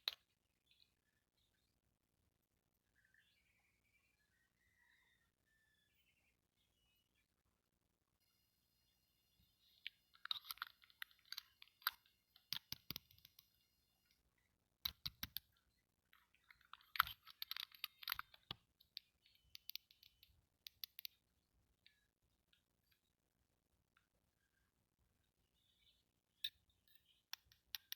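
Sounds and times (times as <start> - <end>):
plastic clicking on plastic: 9.8 - 13.5, 14.8 - 15.5, 16.2 - 21.2, 27.3 - 27.9.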